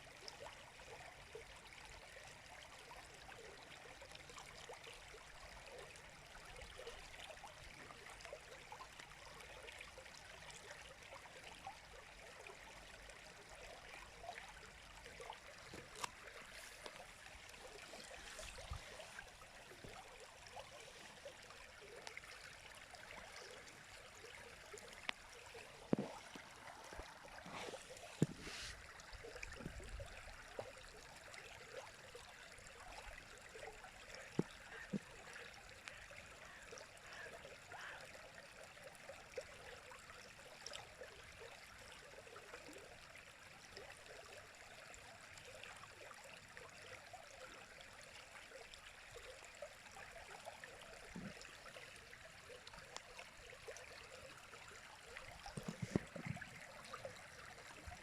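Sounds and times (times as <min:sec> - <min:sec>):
water splashes and plops: 0:13.5 - 0:38.1, 0:49.2 - 0:58.0.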